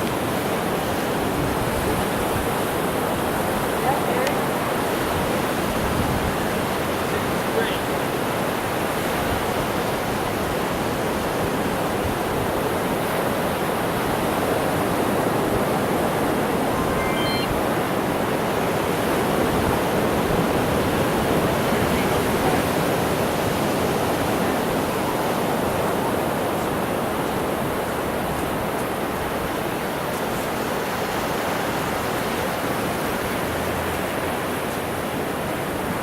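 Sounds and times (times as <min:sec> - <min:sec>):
ocean surf rushing: 0:00.0 - 0:36.0
faint high chirp: 0:16.7 - 0:17.6.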